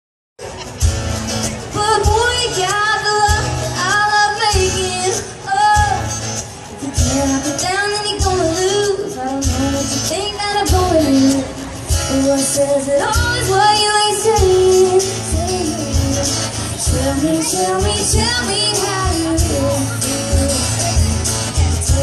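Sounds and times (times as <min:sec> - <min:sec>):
live country band: 0:00.4 - 0:22.0
person singing: 0:06.8 - 0:22.0.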